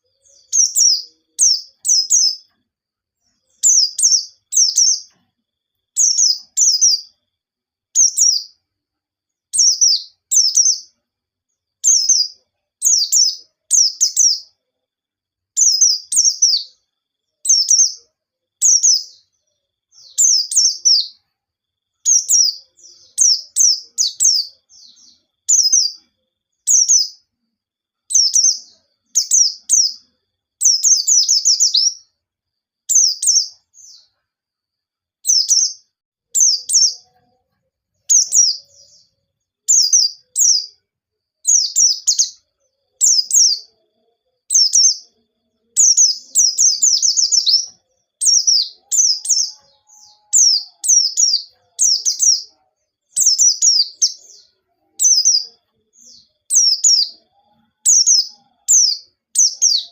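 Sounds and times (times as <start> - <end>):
small bird singing rapid high notes: 0.2 - 2.5, 3.5 - 5.1, 6.0 - 7.1, 8.0 - 8.6, 9.6 - 10.9, 11.8 - 14.5, 15.6 - 16.8, 17.5 - 18.0, 20.0 - 21.2, 22.1 - 26.0, 28.1 - 30.0, 30.6 - 32.1, 32.9 - 34.1, 35.2 - 35.8, 36.4 - 37.1, 38.1 - 39.1, 39.7 - 40.8, 41.5 - 42.4, 43.0 - 43.7, 44.5 - 45.2, 45.8 - 52.5, 53.1 - 59.9.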